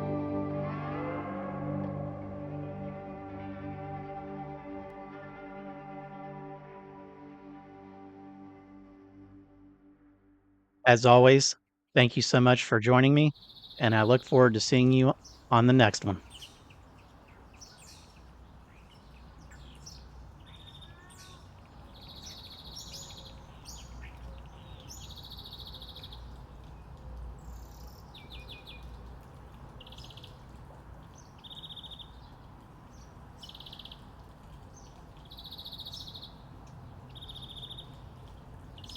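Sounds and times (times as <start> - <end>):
birds high chirps: 13.3 - 38.9.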